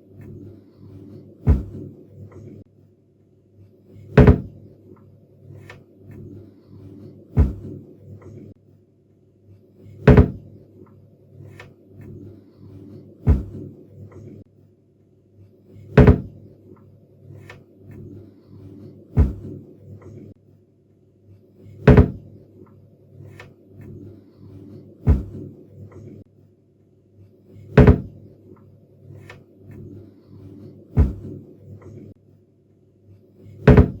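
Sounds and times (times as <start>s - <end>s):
cabinet door knocking shut: 1.5s - 1.8s, 4.2s - 4.5s, 7.4s - 7.6s, 10.1s - 10.4s, 13.3s - 13.5s, 16.0s - 16.3s, 19.2s - 19.4s, 21.9s - 22.2s, 25.1s - 25.4s, 27.8s - 28.1s, 31.0s - 31.3s, 33.7s - 34.0s.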